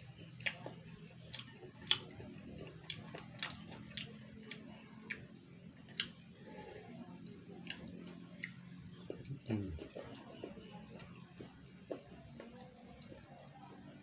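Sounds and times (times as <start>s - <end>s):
person chewing crunchy food: 0.0s - 6.6s, 7.4s - 13.4s
faint low hum: 0.0s - 14.0s.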